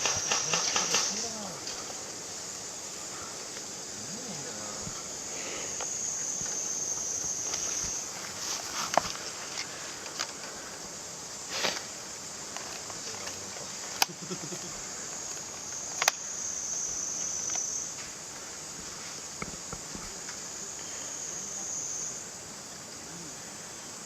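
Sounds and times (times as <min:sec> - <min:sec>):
sharp clicks: 0:00.0 - 0:01.2, 0:16.0 - 0:16.2
high insect drone: 0:00.0 - 0:24.0
rustling: 0:04.4 - 0:14.0.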